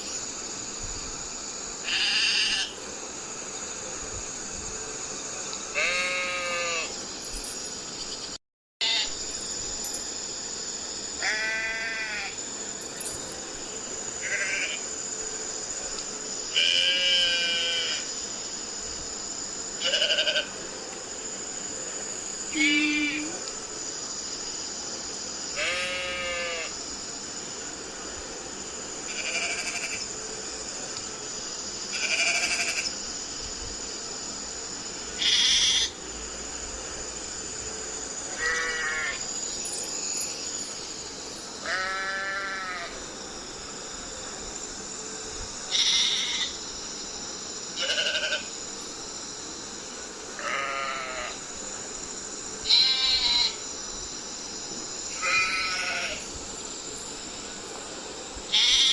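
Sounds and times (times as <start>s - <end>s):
steady high hiss: 0.0s - 58.9s
sheep bleating: 58.5s - 58.9s.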